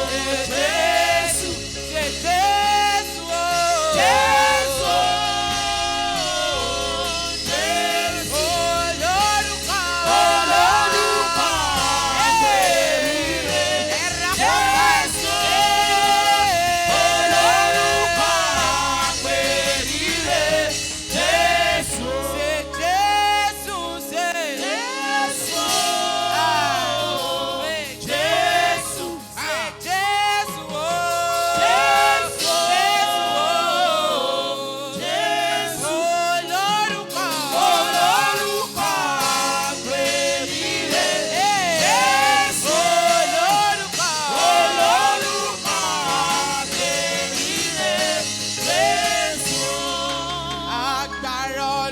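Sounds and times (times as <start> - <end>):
band accompaniment: 0.0 - 51.9
gospel choir singing: 0.0 - 51.9.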